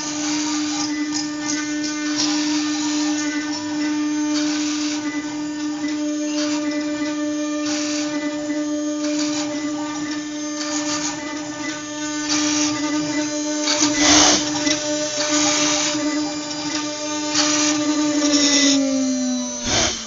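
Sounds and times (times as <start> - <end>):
router spindle whine: 0.0 - 20.0
bit rasping into wood: 10.4 - 20.0.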